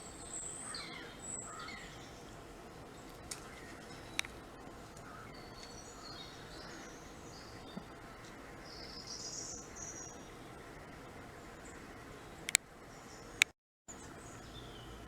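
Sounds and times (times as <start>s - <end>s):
birds chirping and singing: 0.0s - 15.0s
sharp clicks: 4.1s - 4.4s.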